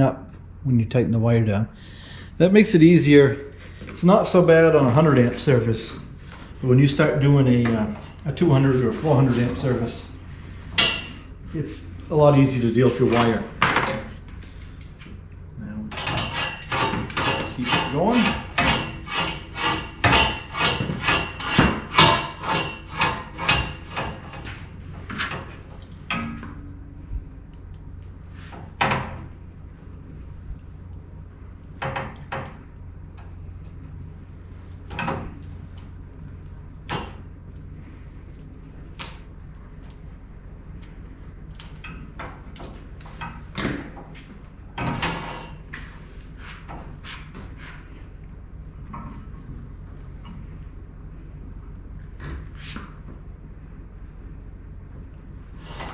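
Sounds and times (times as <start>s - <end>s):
steady low hum: 0.0s - 55.9s
hand tool scraping: 7.4s - 10.0s, 15.9s - 25.7s.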